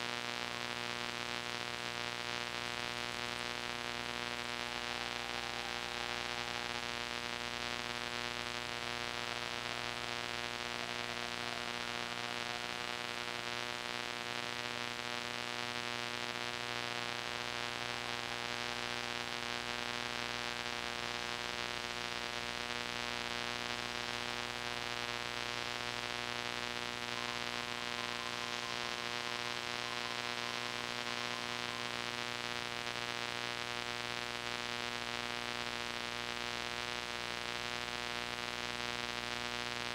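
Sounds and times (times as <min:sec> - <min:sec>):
tape hiss and electrical hum: 0:00.0 - 0:39.9
faint wavering tone: 0:02.2 - 0:33.9.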